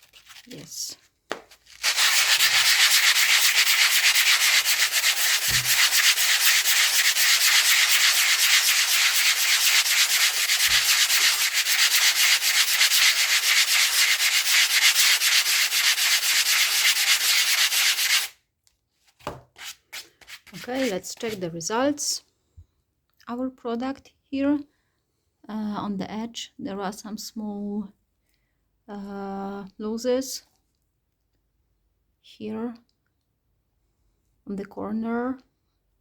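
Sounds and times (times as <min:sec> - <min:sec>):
sanding blocks scraping: 0:01.7 - 0:18.3, 0:19.6 - 0:21.4.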